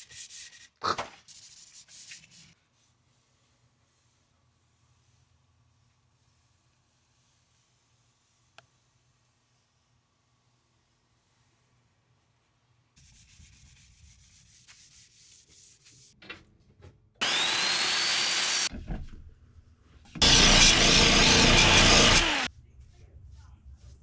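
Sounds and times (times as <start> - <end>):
router motor whining and cutting wood: 17.2 - 18.7, 20.2 - 22.5.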